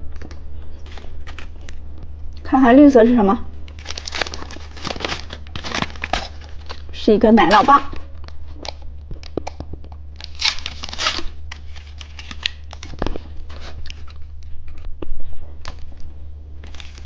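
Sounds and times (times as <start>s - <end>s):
steady low hum: 0.0s - 17.0s
plastic packaging crinkling: 0.2s - 1.8s, 3.6s - 14.9s, 16.6s - 17.0s.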